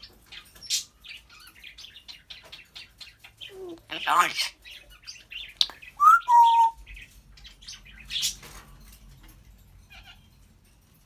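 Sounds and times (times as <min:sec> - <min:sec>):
harsh parrot call: 0:03.5 - 0:04.6, 0:06.0 - 0:06.8
parrot chirps and clicks: 0:05.6 - 0:06.7
parrot whistle: 0:06.0 - 0:06.8.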